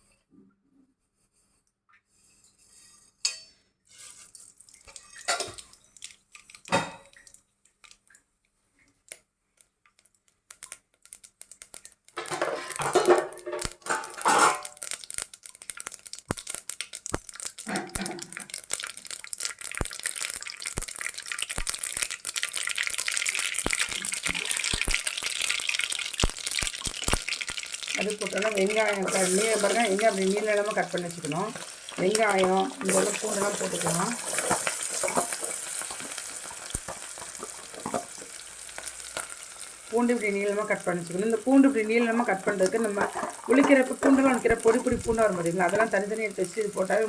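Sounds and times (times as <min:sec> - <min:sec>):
cooking pot and utensils clattering: 0:02.6 - 0:05.8, 0:06.7 - 0:07.2, 0:12.2 - 0:14.9, 0:17.6 - 0:18.6, 0:30.7 - 0:38.4, 0:42.8 - 0:45.1
mustard seeds spluttering in oil: 0:09.9 - 0:47.0.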